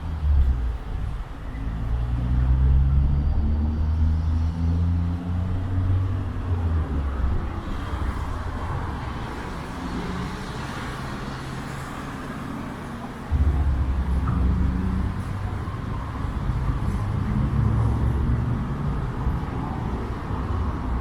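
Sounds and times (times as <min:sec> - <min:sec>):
hiss of passing vehicles: 0:00.0 - 0:21.0
heavy engine rumble: 0:05.2 - 0:21.0.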